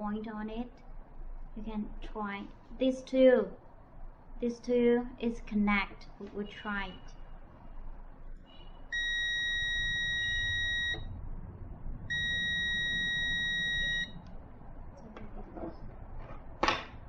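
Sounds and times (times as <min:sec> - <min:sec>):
multimeter continuity beeps: 0:08.5 - 0:11.1, 0:12.1 - 0:14.2.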